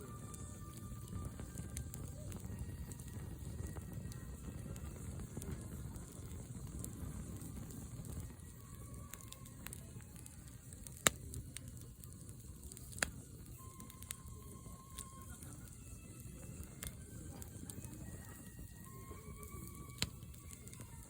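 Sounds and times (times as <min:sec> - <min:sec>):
fire pops: 0:00.0 - 0:21.0
wood campfire crackling: 0:00.0 - 0:21.0.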